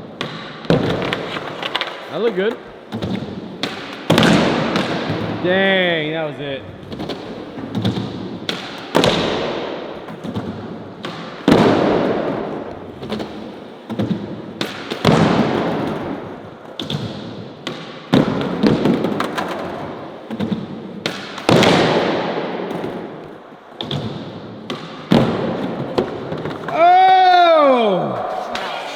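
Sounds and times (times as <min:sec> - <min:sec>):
skateboard wheels rolling: 0:00.7 - 0:03.6
skateboards clapping on ground: 0:17.7 - 0:19.8.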